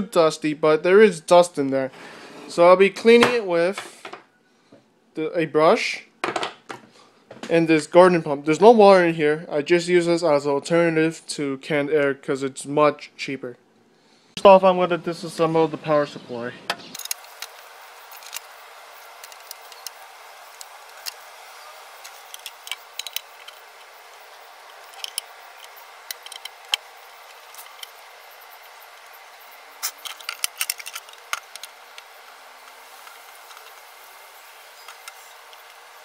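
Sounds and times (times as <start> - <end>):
small metallic clicks and rattles: 16.9 - 21.2, 22.0 - 29.2, 29.8 - 36.0.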